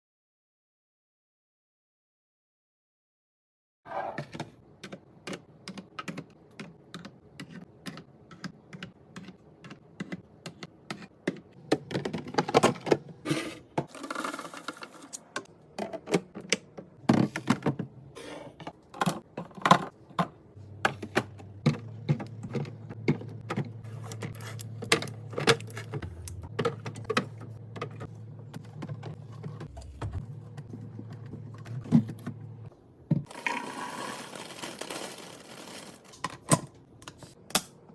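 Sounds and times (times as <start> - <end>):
low steady hum: 20.2 - 32.7.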